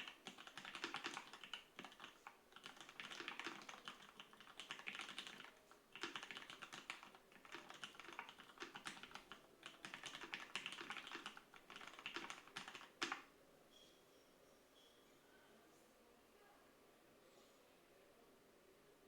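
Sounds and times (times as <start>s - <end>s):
fast typing on mechanical keyboard: 0.0s - 13.3s.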